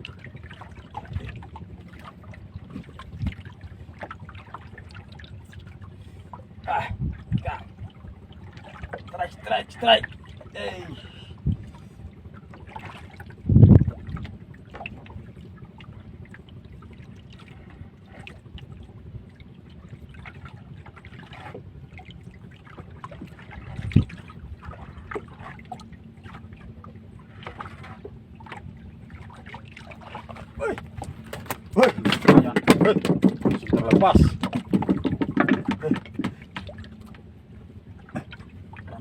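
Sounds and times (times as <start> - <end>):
water lapping around boat: 0.0 - 39.0
light clicks and knocks: 31.0 - 37.2.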